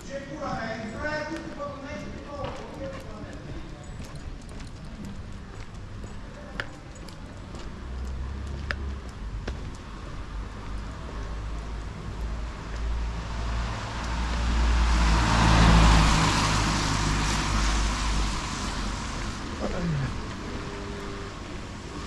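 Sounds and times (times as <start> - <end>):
car passing by: 10.3 - 22.0.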